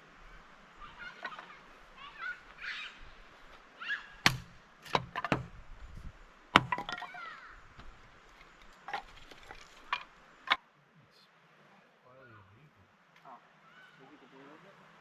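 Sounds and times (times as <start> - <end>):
birds chirping: 0.0 - 15.0
faint rush of water: 0.0 - 15.0
sharp knocks: 4.2 - 5.5, 6.6 - 7.1.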